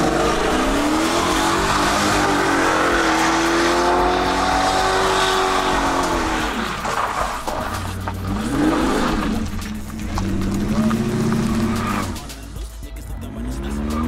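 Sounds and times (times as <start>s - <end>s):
car engine revving high: 0.0s - 12.3s
tyres squealing and skidding: 0.0s - 12.4s.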